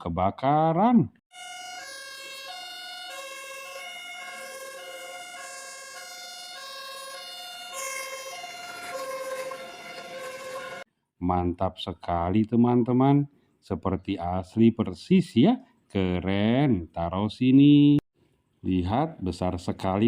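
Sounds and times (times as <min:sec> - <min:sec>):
toy two-tone siren: 0:01.3 - 0:10.9.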